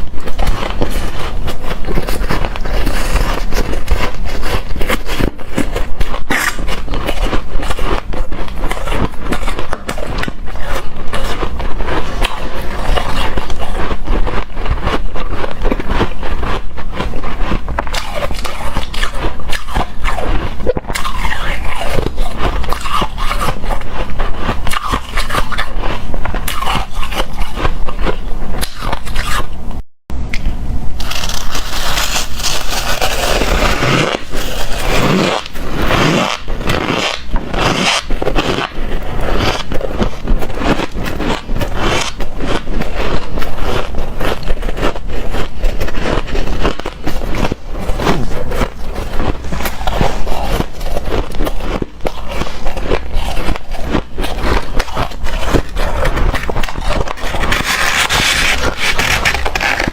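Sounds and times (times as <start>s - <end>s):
crunching and chewing ice: 0.0s - 29.7s, 30.9s - 59.9s
ice being scooped: 30.9s - 59.9s.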